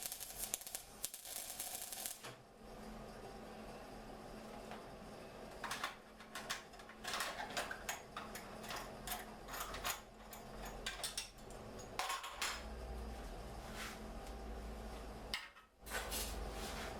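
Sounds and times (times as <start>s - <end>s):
steady low hum: 2.4s - 16.9s.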